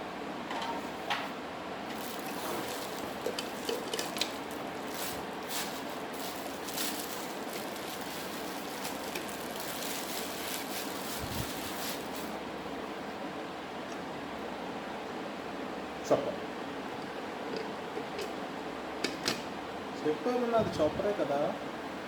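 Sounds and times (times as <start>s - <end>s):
packaging rustling and crinkling: 1.9s - 12.4s.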